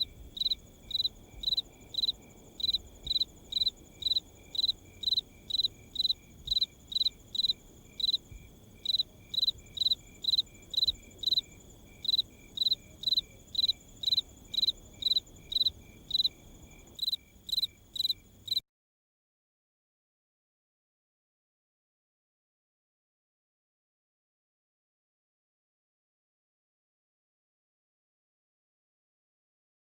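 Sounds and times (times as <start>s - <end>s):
crickets chirping: 0.0s - 18.6s
faint low hiss: 0.0s - 18.6s
high-pitched insect trill: 0.4s - 8.2s, 8.8s - 18.6s.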